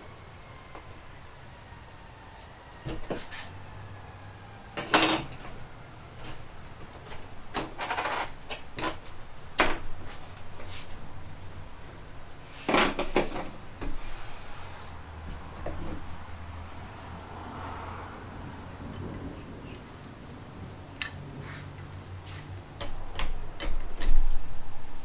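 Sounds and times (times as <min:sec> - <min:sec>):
metal parts and tools clanking: 0:04.8 - 0:05.6, 0:07.0 - 0:09.8, 0:12.5 - 0:13.6.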